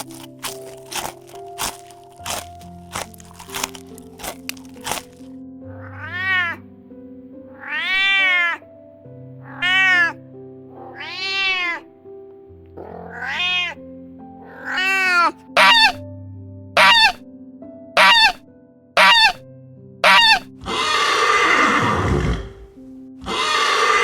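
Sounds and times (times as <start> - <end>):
background music with held notes: 0.0 - 24.0
cat meowing: 5.7 - 6.6, 7.6 - 8.6, 9.4 - 10.2, 10.8 - 11.9, 13.0 - 13.8, 14.5 - 16.0, 16.8 - 17.2, 18.0 - 18.4, 19.0 - 19.4, 20.0 - 22.6.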